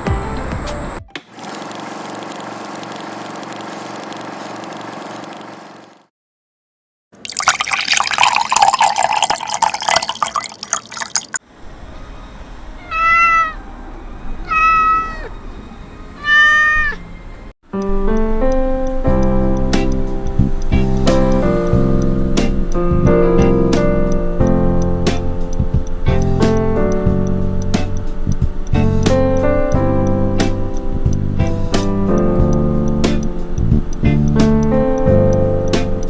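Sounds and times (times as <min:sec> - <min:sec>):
cat meowing: 0:12.7 - 0:17.2.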